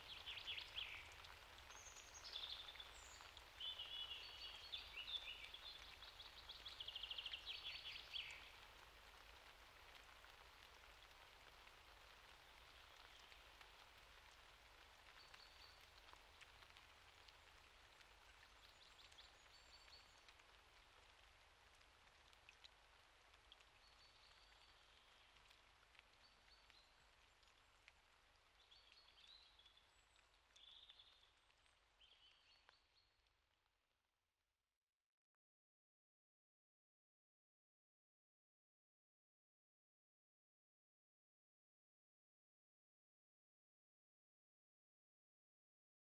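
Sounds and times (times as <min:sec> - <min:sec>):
faint steady rain: 0:00.0 - 0:34.2.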